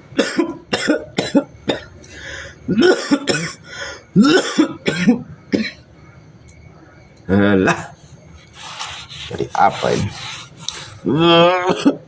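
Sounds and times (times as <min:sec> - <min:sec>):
person coughing: 0:00.2 - 0:01.9, 0:02.7 - 0:05.8, 0:11.4 - 0:12.0.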